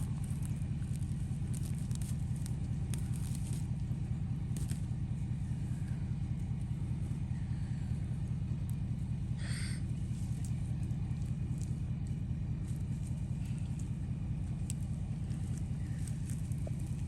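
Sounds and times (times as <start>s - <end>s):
farm machinery engine rumble: 0.0s - 17.0s.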